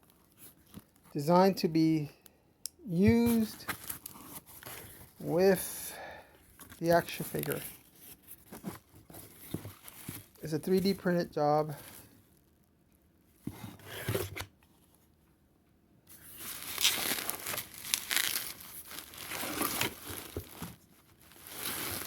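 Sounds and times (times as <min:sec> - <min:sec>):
packaging tearing and crinkling: 0:16.3 - 0:22.0.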